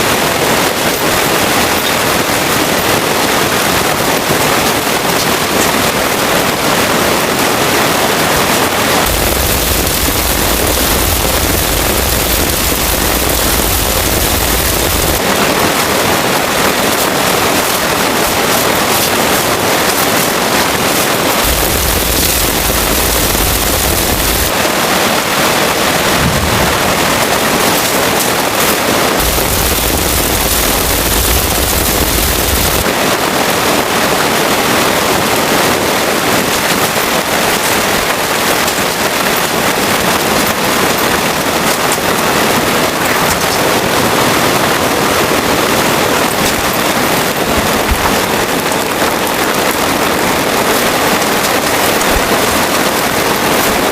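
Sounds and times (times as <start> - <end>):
heavy rain: 0.0 - 53.9
low rumble: 25.9 - 27.8.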